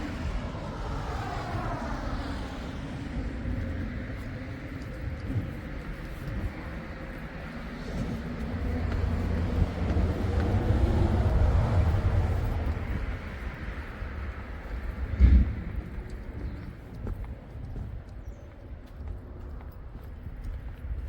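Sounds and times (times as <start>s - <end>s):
vehicle passing by: 0.0s - 16.7s.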